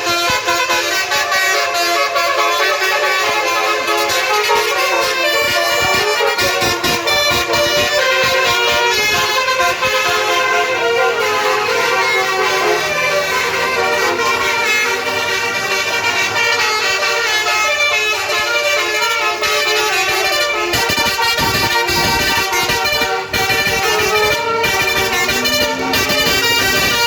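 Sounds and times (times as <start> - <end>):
bus air horns playing a melody: 0.0 - 27.0.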